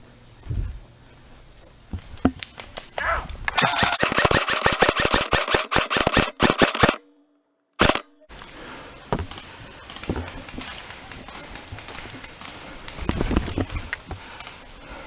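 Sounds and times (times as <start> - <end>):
airsoft guns firing: 3.5 - 7.2, 7.8 - 8.3.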